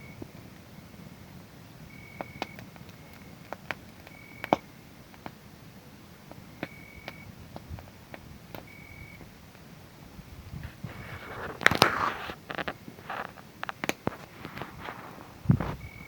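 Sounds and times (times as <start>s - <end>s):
wood fire crackling and popping: 0.1s - 16.0s
cricket chirping trill: 1.8s - 4.7s, 6.5s - 7.3s, 8.6s - 9.2s, 15.5s - 16.0s.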